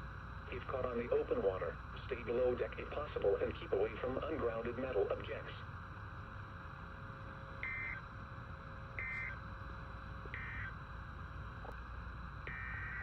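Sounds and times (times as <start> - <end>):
screechy digital data bursts: 7.6 - 8.0, 9.0 - 9.5, 10.3 - 10.8, 12.4 - 13.0.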